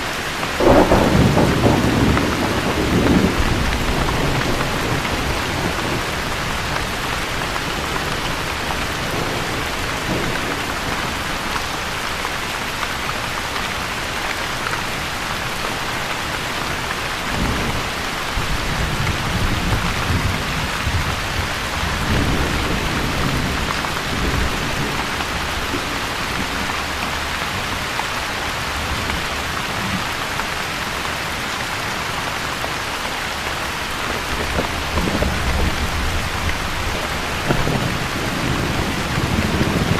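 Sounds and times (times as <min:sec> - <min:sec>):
heavy rain: 0:00.0 - 0:39.9
low thunder rumbling: 0:00.6 - 0:12.0, 0:17.3 - 0:27.8, 0:34.0 - 0:39.9.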